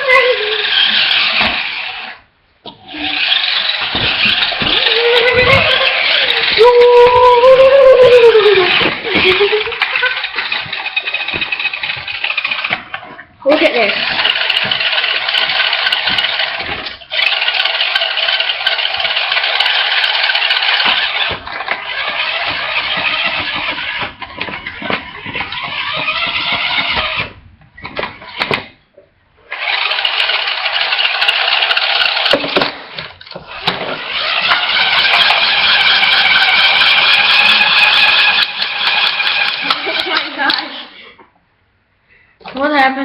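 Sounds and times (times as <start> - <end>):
toy car engine-revving sound effects: 0.0 - 2.2, 2.8 - 6.6, 7.6 - 12.8, 13.9 - 24.2, 25.2 - 27.4, 29.5 - 32.7, 33.5 - 40.9.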